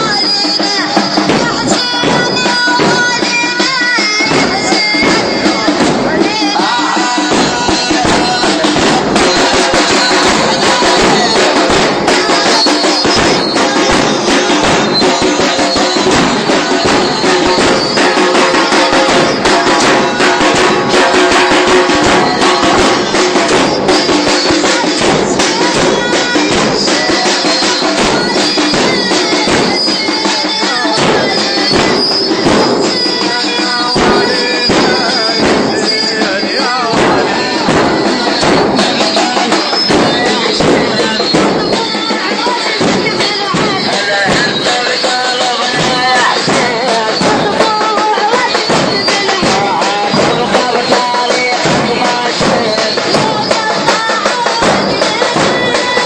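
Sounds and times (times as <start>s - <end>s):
rhythmic hand-beating: 0.0s - 56.0s
man chanting a lament: 33.2s - 41.5s.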